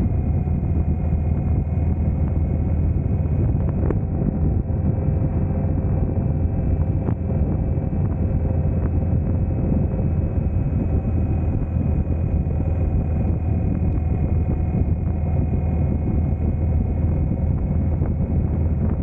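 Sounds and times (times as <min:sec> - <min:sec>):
motorcycle engine running steadily: 0:00.0 - 0:19.0.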